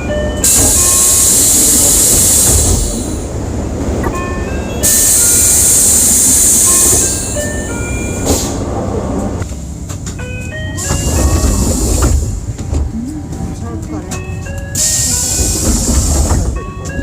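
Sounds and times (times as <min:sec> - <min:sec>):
air hiss from pneumatic doors: 0:00.4 - 0:03.2, 0:10.8 - 0:12.5, 0:14.8 - 0:16.6.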